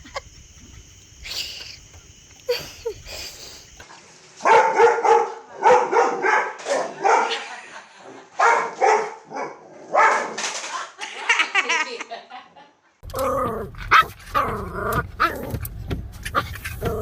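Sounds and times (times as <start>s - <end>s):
dog barking: 4.4s - 7.4s, 8.4s - 10.4s, 13.9s - 15.4s
dog yipping: 13.9s - 14.5s.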